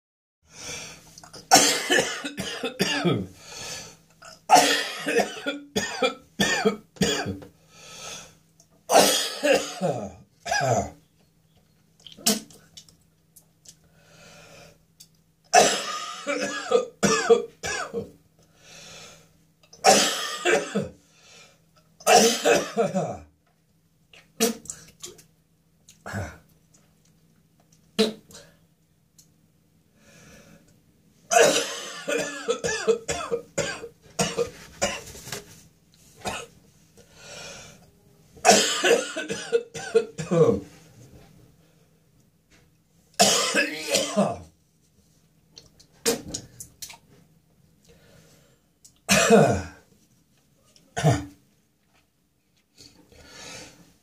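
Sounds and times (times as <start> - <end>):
person coughing harshly: 1.4 - 3.3, 4.3 - 7.4, 8.9 - 11.0, 15.6 - 18.1, 19.8 - 21.0, 22.0 - 23.3, 31.3 - 35.1, 38.4 - 40.6, 43.2 - 44.5, 49.1 - 49.8, 51.0 - 51.4.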